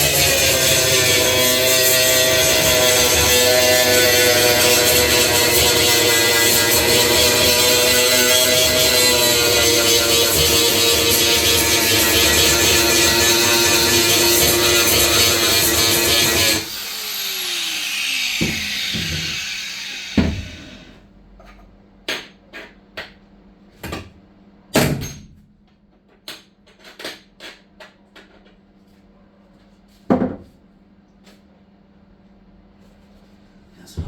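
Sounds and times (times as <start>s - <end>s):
power tool winding down: 0.0s - 21.0s.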